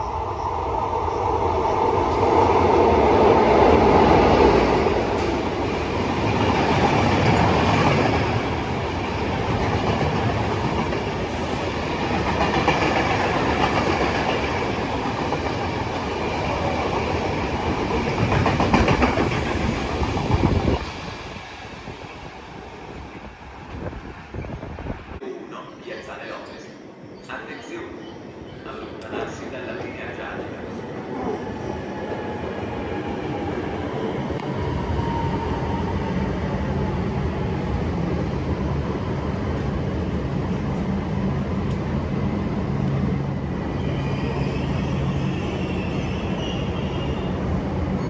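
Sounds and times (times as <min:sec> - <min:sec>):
train wheels on rails: 0:00.0 - 0:25.2.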